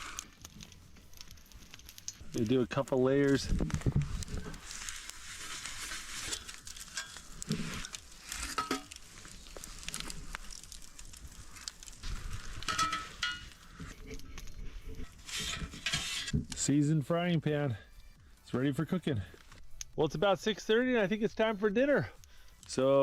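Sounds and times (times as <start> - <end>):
oil sizzling on a griddle: 0.0 - 1.4, 2.0 - 14.1
campfire crackles: 0.0 - 23.0.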